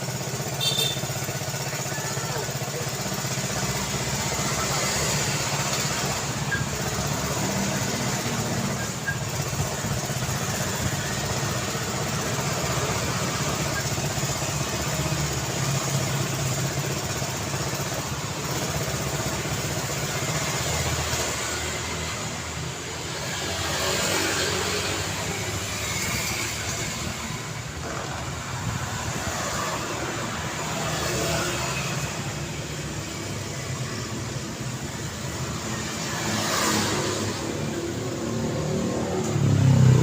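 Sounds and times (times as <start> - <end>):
car engines running: 0.0 - 40.0
vehicle passing close: 23.2 - 40.0.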